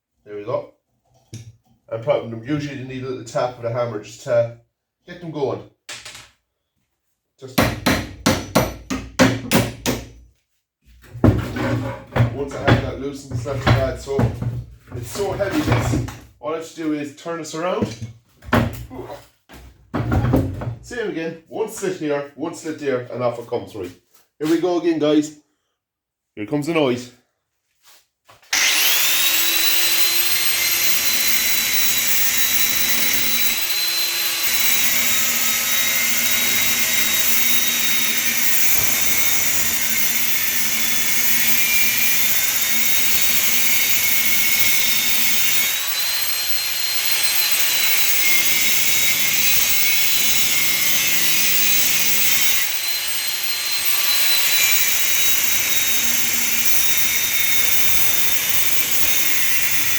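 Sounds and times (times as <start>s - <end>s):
angle grinder cutting metal: 15.2s - 16.0s, 28.5s - 59.9s.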